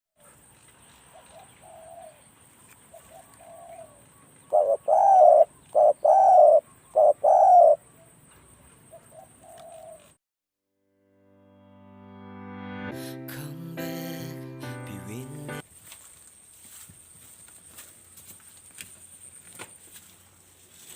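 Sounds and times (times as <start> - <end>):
doves cooing: 1.1 - 2.3, 2.9 - 8.1, 8.9 - 10.2.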